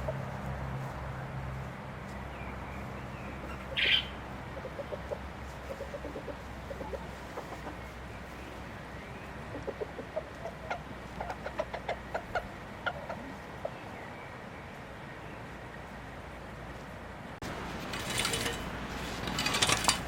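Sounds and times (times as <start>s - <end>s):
chickens clucking: 0.0s - 0.6s, 2.1s - 14.8s.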